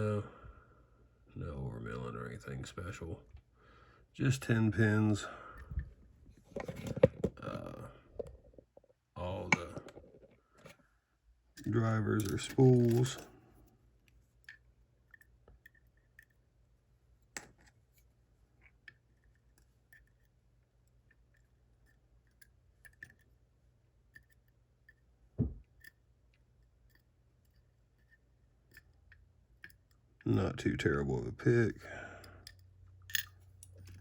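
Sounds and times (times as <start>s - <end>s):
dull thump: 25.4s - 25.6s.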